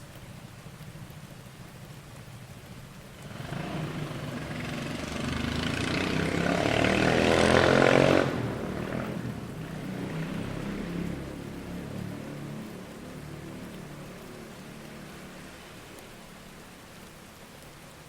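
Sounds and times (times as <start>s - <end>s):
car engine revving and idling: 3.2s - 11.6s.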